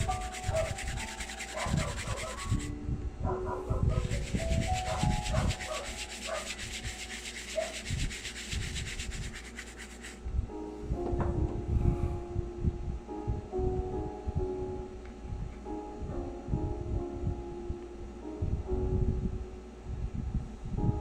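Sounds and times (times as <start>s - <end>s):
fast rhythmic polishing rubbing: 0.0s - 2.7s, 3.7s - 10.2s.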